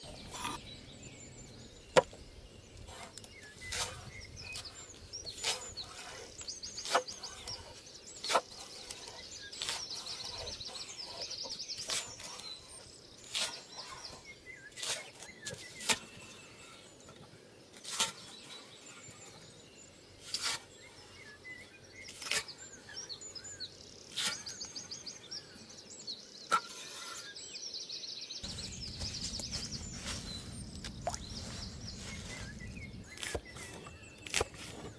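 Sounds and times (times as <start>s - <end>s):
birds singing high trills: 20.8s - 34.9s.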